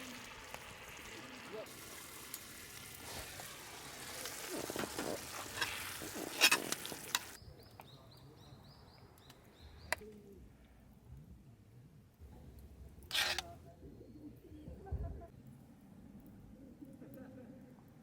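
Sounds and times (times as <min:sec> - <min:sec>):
food sizzling in a pan: 0:00.0 - 0:07.4
stirring and scraping in pan: 0:01.7 - 0:07.4, 0:13.1 - 0:13.6.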